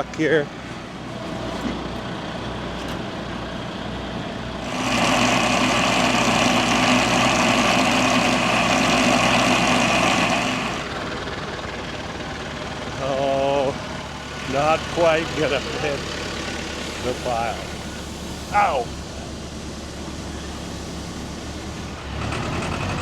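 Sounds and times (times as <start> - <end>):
tractor engine running: 0.0 - 23.0.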